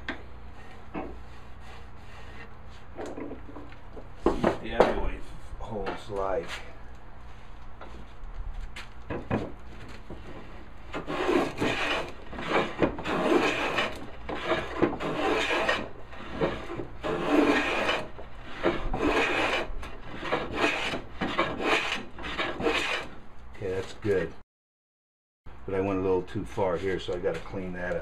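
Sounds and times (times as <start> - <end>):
hand plane shaving wood: 10.4 - 23.1.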